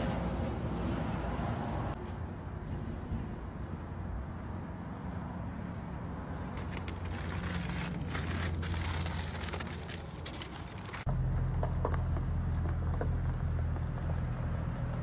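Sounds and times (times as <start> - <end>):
tape peeling crackle: 6.4 - 11.1.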